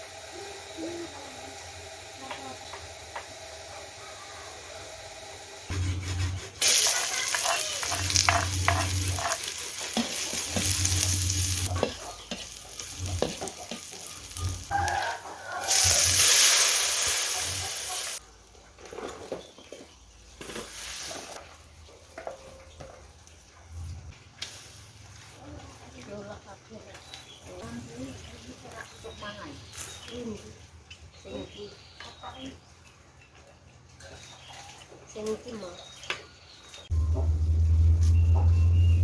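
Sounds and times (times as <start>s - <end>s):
utensil clinking and scraping: 5.8s - 18.2s
food sizzling in a pan: 6.6s - 18.2s.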